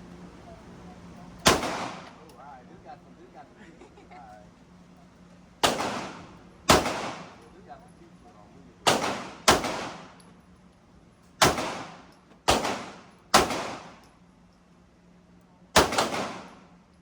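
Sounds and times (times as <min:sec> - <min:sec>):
pistol shots echoing: 0:01.4 - 0:02.2, 0:05.6 - 0:07.4, 0:08.8 - 0:10.2, 0:11.4 - 0:14.0, 0:15.8 - 0:16.6.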